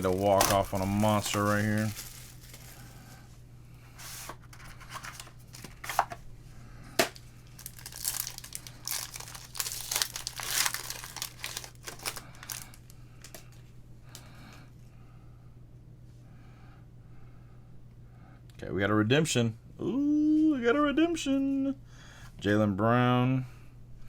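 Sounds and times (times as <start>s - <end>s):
plastic wrapping crinkling: 0.0s - 3.2s, 4.0s - 6.2s, 7.0s - 13.6s.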